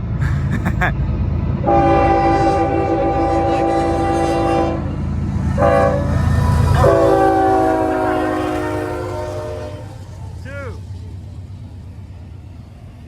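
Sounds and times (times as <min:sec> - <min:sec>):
diesel locomotive rumble: 0:00.0 - 0:13.0
locomotive air horn blasts: 0:01.6 - 0:10.2.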